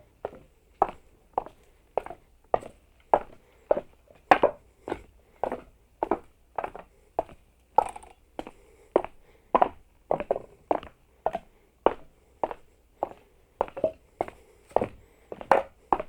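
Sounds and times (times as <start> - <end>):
footsteps walking: 8.4 - 16.0.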